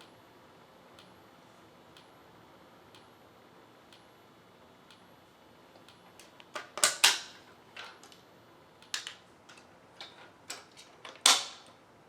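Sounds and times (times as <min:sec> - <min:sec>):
strobe ticking with high whine: 0:00.0 - 0:06.5.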